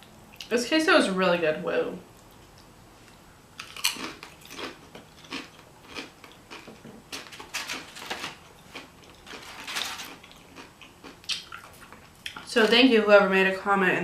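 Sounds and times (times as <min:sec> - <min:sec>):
chewing and mouth smacks: 0:02.2 - 0:07.8, 0:10.1 - 0:12.5.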